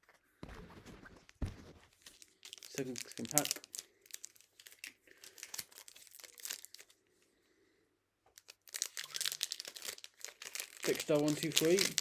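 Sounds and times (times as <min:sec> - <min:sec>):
plastic wrapper tearing and crinkling: 0:02.0 - 0:07.0, 0:08.4 - 0:12.0.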